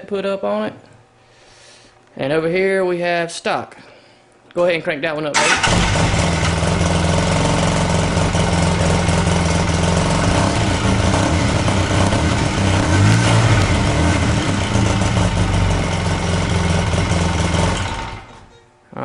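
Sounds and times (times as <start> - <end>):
engine idling and revving: 5.4 - 18.5.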